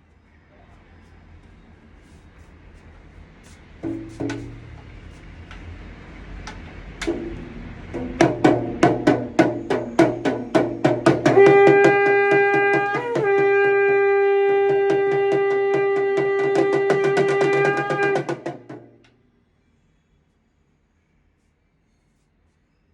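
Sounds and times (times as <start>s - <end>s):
hand drum beats: 3.8s - 4.9s, 7.0s - 19.0s
conch shell horn note: 11.1s - 18.7s.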